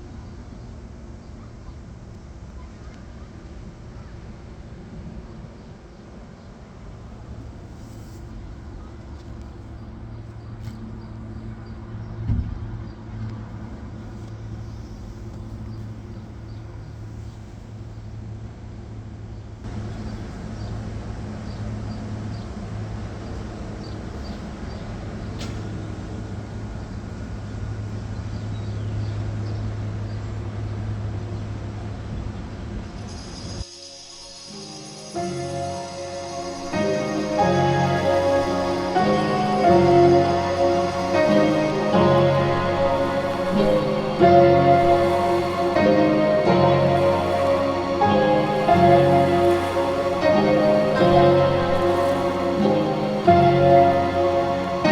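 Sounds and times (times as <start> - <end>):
vehicle road and engine hum: 6.7 - 33.1.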